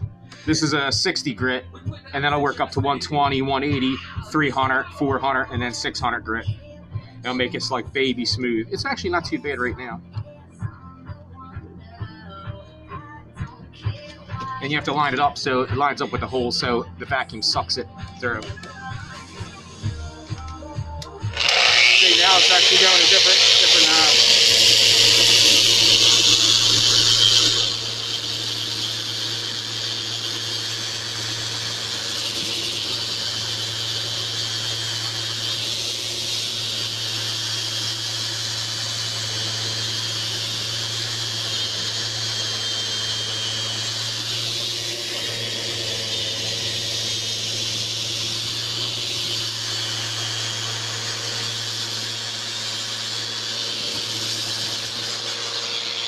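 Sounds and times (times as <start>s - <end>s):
dust extraction vacuum: 21.0s - 56.0s
sander running on wood: 21.1s - 56.0s.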